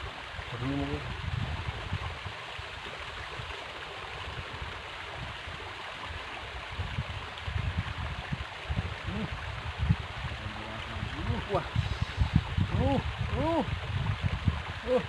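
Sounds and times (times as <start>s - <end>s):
river water rushing: 10.2s - 15.0s
low rumbling: 11.0s - 15.0s.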